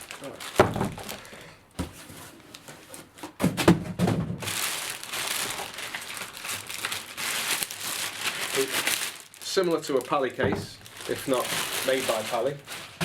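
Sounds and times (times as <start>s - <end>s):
packaging crinkling: 0.0s - 1.5s, 4.4s - 13.0s
carrying case knocks and thuds: 0.6s - 1.1s, 10.4s - 10.8s.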